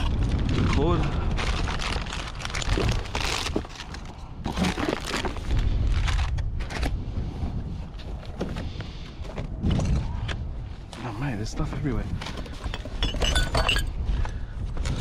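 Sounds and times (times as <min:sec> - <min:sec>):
low rumble: 0:00.0 - 0:15.0
junk items knocking and clattering: 0:12.1 - 0:14.3.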